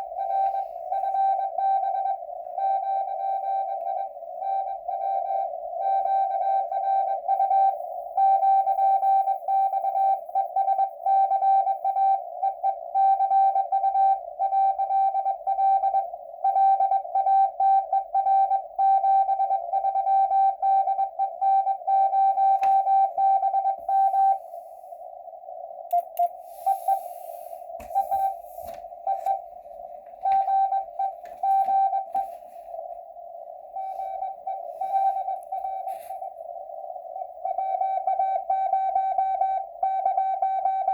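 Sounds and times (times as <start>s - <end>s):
morse code tone: 0.0s - 24.5s, 25.9s - 40.9s
radio clicks and crackles: 22.4s - 24.0s, 25.7s - 26.4s, 27.6s - 37.5s
radio hiss: 23.9s - 37.4s.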